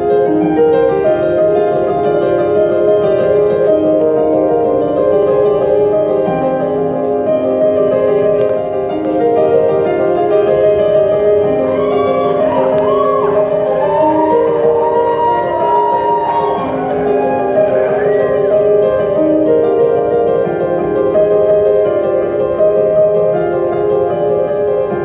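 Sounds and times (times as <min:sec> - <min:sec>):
keyboard chords: 0:00.0 - 0:25.0.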